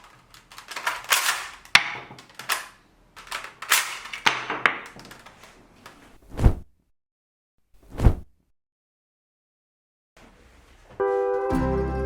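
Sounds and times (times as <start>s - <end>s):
toy rifle snapping and clacking: 0.0s - 5.3s.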